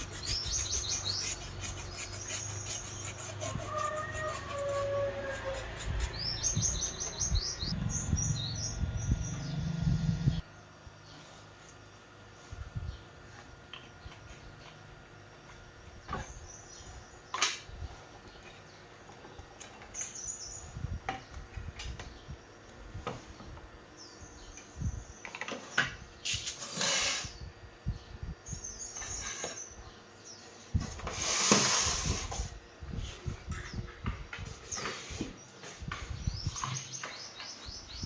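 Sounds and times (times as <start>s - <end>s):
small birds chirping: 0.0s - 10.4s, 34.6s - 38.0s.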